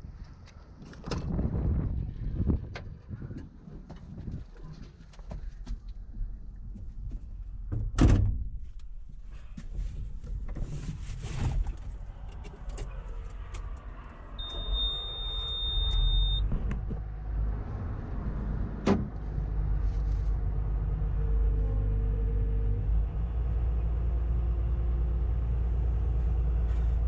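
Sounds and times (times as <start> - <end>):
steady high beep: 14.4 - 16.4.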